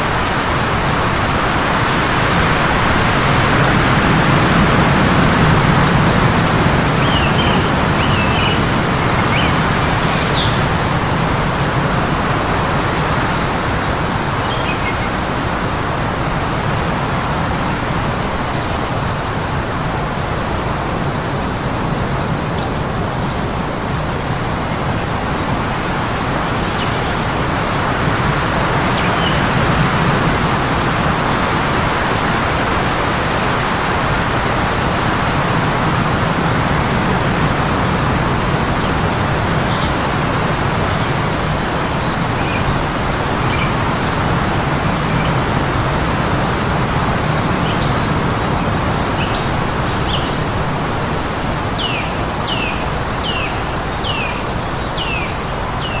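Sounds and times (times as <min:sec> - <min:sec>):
blizzard wind blowing: 0:00.0 - 0:56.0
small birds chirping: 0:04.6 - 0:12.8, 0:47.2 - 0:56.0.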